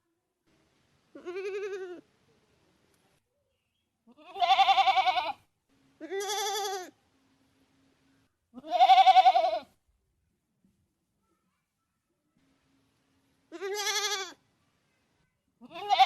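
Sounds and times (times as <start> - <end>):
goat bleating: 1.2 - 2.0, 4.1 - 5.4, 6.0 - 6.9, 8.6 - 9.7, 13.5 - 14.4, 15.6 - 16.0.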